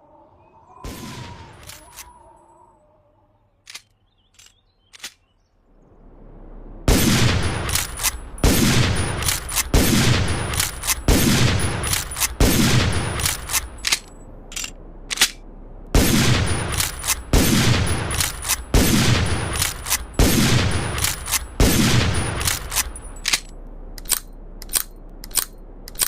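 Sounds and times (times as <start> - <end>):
rifle lever clicks: 3.7 - 5.2, 13.2 - 15.4, 22.4 - 26.0
rifle shots echoing: 6.9 - 15.4, 16.0 - 23.5.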